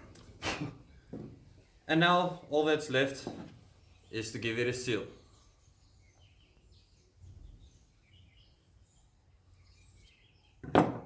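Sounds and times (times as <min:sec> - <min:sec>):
faint bird chirps: 0:05.1 - 0:10.6.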